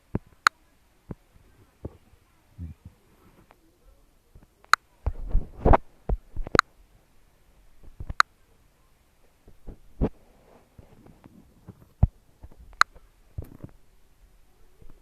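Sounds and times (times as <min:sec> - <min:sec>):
sharp clicks: 0:04.6 - 0:04.9, 0:12.7 - 0:13.0.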